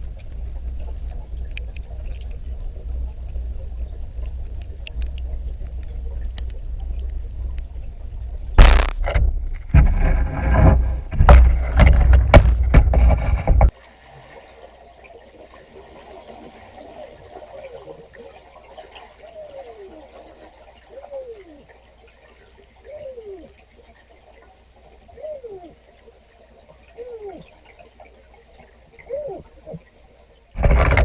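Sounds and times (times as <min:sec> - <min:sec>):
low rumble: 0:00.0 - 0:13.7
water splashing and sloshing: 0:00.0 - 0:31.0.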